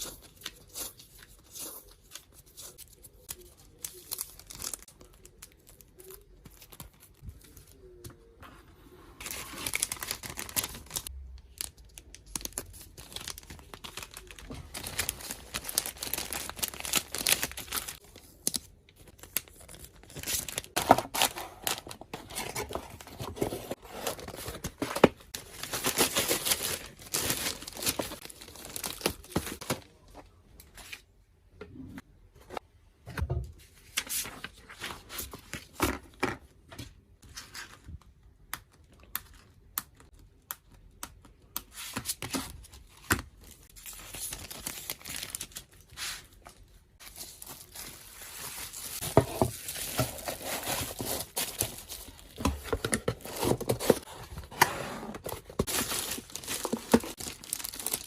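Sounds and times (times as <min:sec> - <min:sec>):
plastic packaging crinkling: 0:09.2 - 0:29.8, 0:43.4 - 0:54.5, 0:55.2 - 0:58.0.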